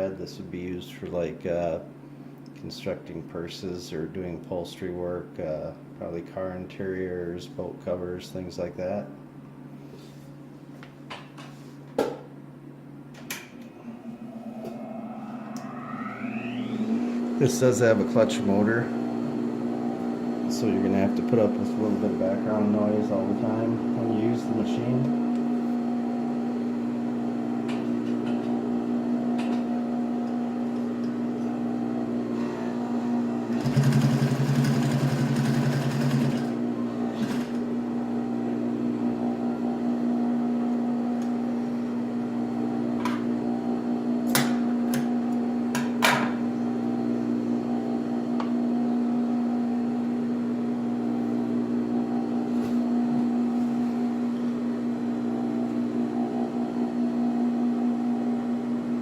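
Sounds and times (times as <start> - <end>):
sewing machine motor humming: 33.4 - 37.6
sewing machine stitching: 33.5 - 37.6.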